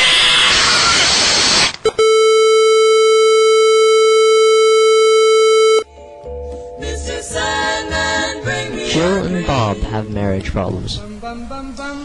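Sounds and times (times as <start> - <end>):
steady electronic beep tone: 1.9 - 5.9
quiet music: 5.8 - 12.0.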